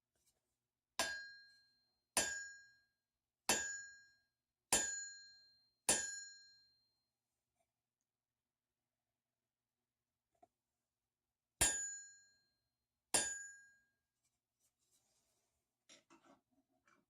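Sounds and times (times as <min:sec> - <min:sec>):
hammer ringing on anvil: 0:01.0 - 0:01.6, 0:02.2 - 0:02.8, 0:03.5 - 0:04.1, 0:04.7 - 0:06.6, 0:11.6 - 0:12.2, 0:13.1 - 0:13.7.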